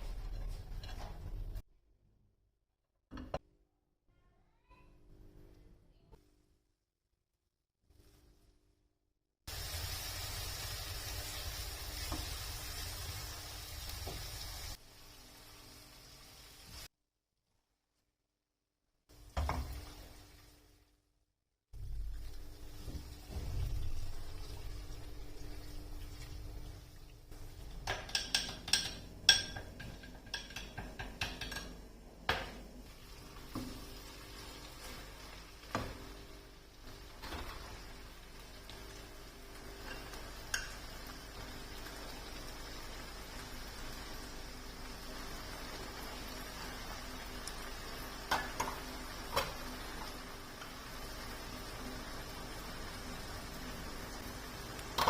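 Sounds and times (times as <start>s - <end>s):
food sizzling in hot oil: 9.5s - 16.9s, 32.9s - 55.0s
dishes and utensils clinking: 27.7s - 32.6s.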